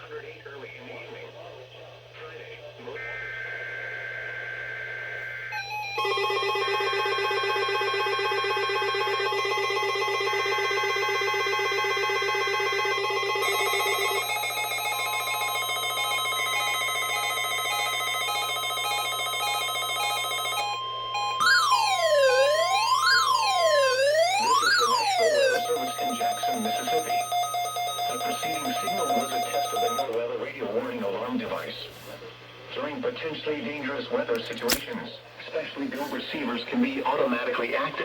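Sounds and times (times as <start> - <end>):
steady warning alarm tone: 3.0 - 30.1
rapid electronic beeping: 6.9 - 30.1
siren-like sweeping tone: 21.2 - 25.8.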